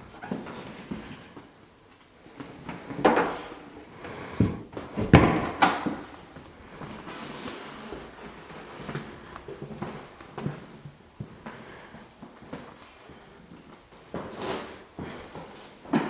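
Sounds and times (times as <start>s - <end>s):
doors or drawers knocking shut: 4.4s - 6.1s.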